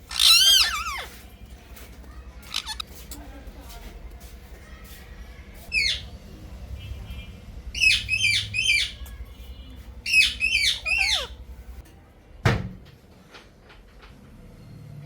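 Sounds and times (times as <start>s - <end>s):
parrot squawking: 0.0s - 1.2s, 2.5s - 2.8s, 7.8s - 9.0s, 10.0s - 11.4s.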